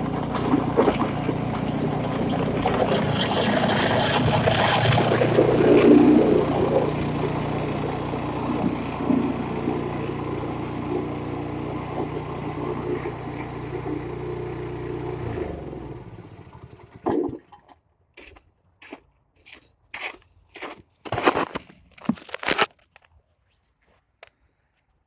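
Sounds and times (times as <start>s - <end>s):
snow crunching: 0.0s - 11.4s, 18.9s - 22.7s
snowblower engine running: 0.0s - 17.4s.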